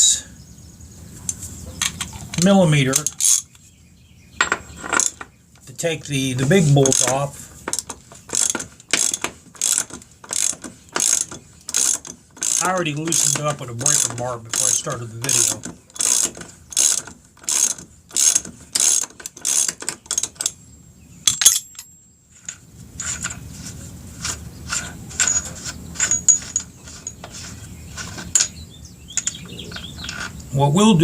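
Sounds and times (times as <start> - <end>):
socket ratchet clicking: 14.0 - 20.6.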